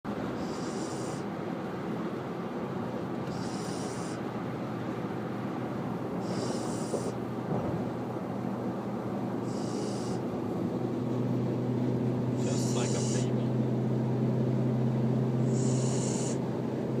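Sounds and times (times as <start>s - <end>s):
puppy snoring with whistling: 0.4s - 1.3s, 3.3s - 4.3s, 6.2s - 7.2s, 9.4s - 10.2s, 12.4s - 13.3s, 15.4s - 16.4s.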